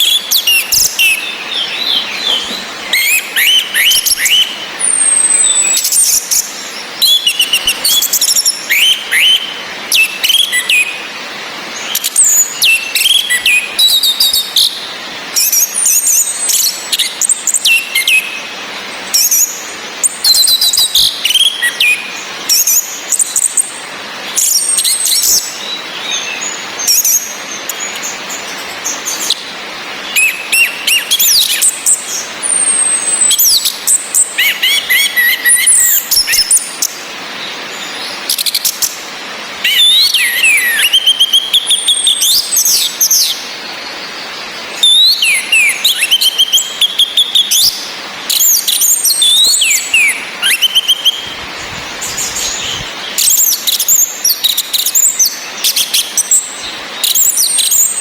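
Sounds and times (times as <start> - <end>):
birds whistling and trilling: 0.0 - 58.0
rain hiss: 0.0 - 58.0.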